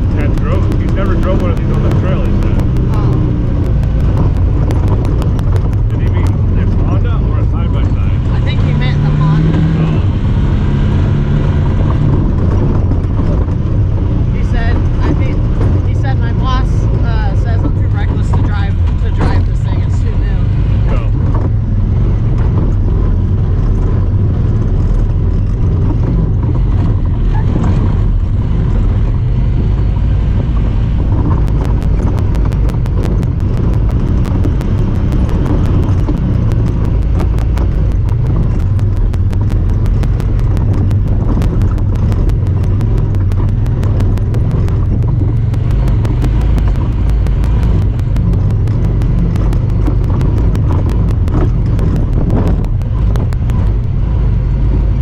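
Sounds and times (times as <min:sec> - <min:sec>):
camera fast ticking: 0:00.0 - 0:07.0, 0:31.0 - 0:55.0
engine low rumble: 0:00.0 - 0:55.0.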